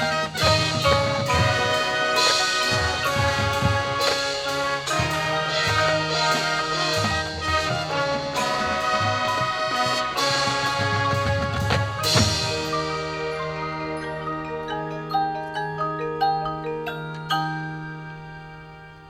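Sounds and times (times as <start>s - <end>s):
drum hits: 0.0s - 13.9s
marching band brass chords: 0.0s - 15.6s.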